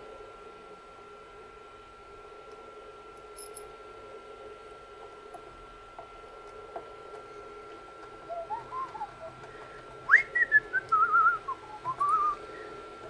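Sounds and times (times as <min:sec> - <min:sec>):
man whistling a tune: 0:08.3 - 0:09.3, 0:10.1 - 0:12.4.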